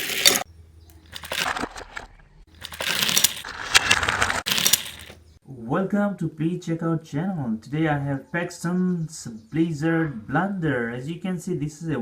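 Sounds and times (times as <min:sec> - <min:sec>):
small clicks: 0:00.0 - 0:05.2
crackling rustling noise: 0:01.0 - 0:05.2.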